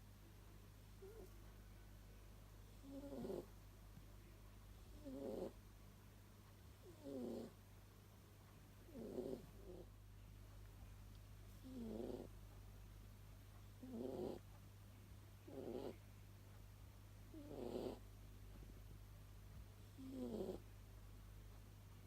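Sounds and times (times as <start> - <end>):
cat snoring: 1.0 - 1.2, 2.7 - 3.5, 4.9 - 5.6, 6.8 - 7.6, 8.9 - 9.9, 11.6 - 12.4, 13.8 - 14.4, 15.4 - 16.0, 17.3 - 18.0, 19.9 - 20.6.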